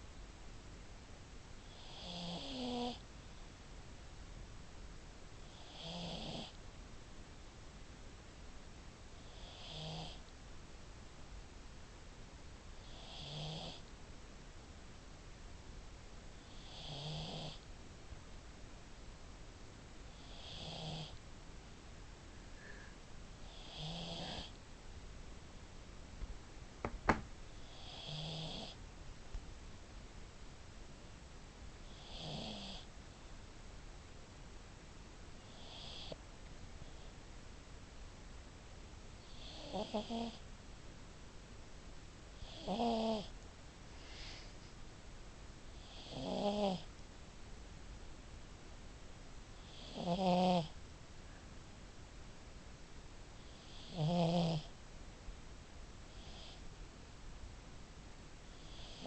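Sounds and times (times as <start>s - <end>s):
dog snoring: 1.6s - 3.0s, 5.4s - 6.6s, 9.2s - 10.2s, 12.8s - 13.8s, 16.4s - 17.7s, 20.1s - 21.2s, 23.4s - 24.6s, 27.6s - 28.8s, 31.8s - 32.9s, 35.4s - 36.2s, 39.2s - 40.4s, 42.4s - 43.3s, 45.7s - 46.9s, 49.6s - 50.8s, 53.4s - 54.7s, 56.1s - 56.6s, 58.6s - 59.0s.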